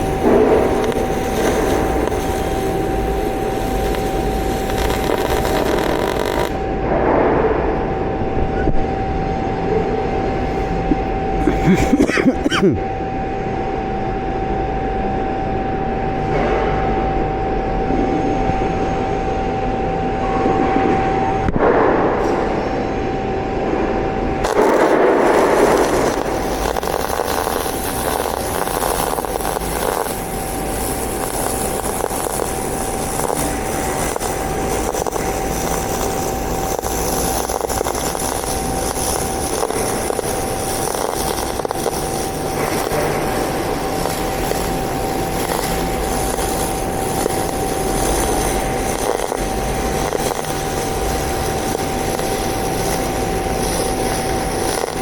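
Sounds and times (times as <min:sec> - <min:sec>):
welding arc hissing and crackling: 0:00.0 - 0:08.9, 0:09.5 - 0:12.8, 0:21.4 - 0:55.0.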